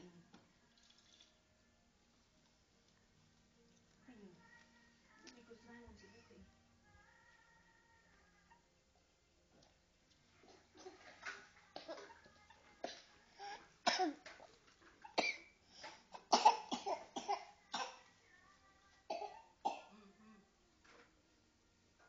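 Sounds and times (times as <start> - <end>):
child coughing: 11.8 - 12.2, 12.8 - 14.3, 15.0 - 18.1, 19.1 - 20.2.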